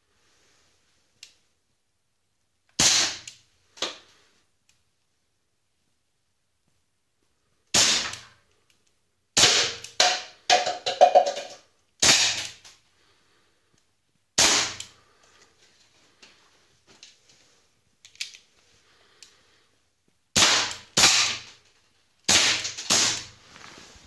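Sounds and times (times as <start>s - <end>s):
faint small clicks: 1.2s - 1.4s, 8.5s - 9.0s
pellet pistol shots: 2.8s - 3.3s, 7.8s - 8.2s, 9.4s - 10.3s, 12.0s - 12.6s, 14.4s - 14.9s, 20.3s - 21.5s, 22.3s - 23.3s.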